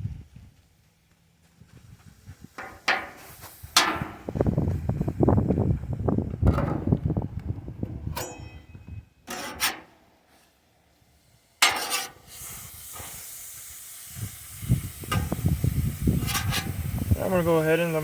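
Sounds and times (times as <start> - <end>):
metal utensil scraping and clinking: 11.6 - 12.2
steak sizzling on a grill: 11.9 - 18.0.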